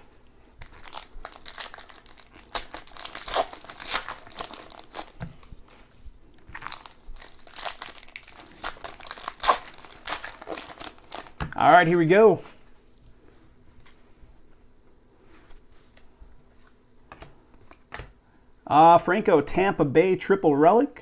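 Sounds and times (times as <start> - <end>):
plastic wrapping crinkling and tearing: 0.6 - 12.0.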